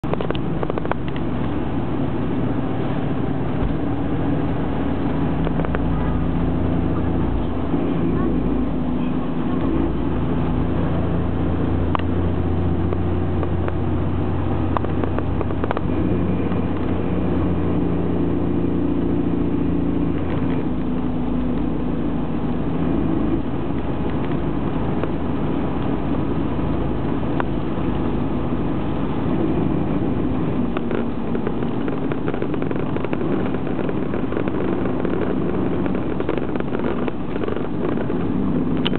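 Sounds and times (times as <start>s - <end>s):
drivetrain grinding rattle: 0.0s - 38.9s
vehicle engine and road noise: 0.0s - 38.9s.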